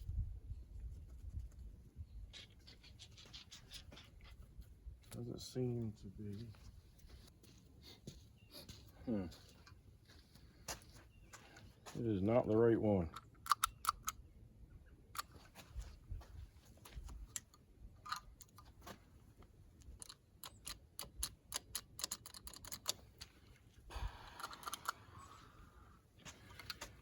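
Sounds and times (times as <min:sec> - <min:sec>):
light clicks of plastic parts: 0:12.4 - 0:14.2, 0:16.8 - 0:25.2, 0:26.2 - 0:27.0.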